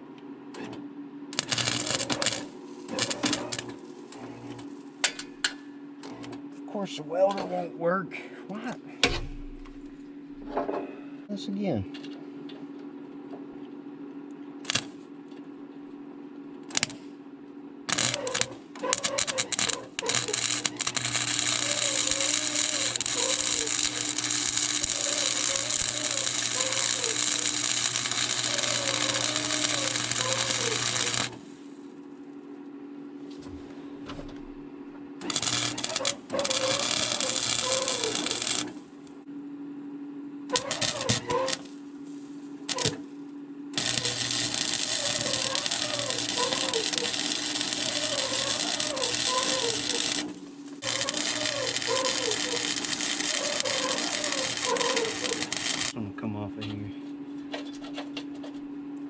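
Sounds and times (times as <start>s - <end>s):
welding arc crackling: 1.3s - 4.9s, 14.6s - 15.0s, 16.6s - 17.0s, 17.9s - 31.8s, 35.2s - 39.1s, 40.5s - 41.8s, 42.6s - 43.0s, 43.8s - 56.0s
welding machine hum: 1.3s - 5.2s, 14.6s - 15.1s, 16.6s - 17.2s, 17.8s - 32.0s, 35.2s - 39.2s, 40.5s - 56.0s.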